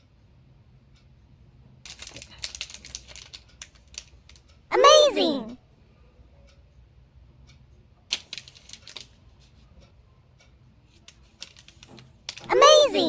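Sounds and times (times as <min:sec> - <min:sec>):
candy wrapper crinkling: 0:01.9 - 0:04.2.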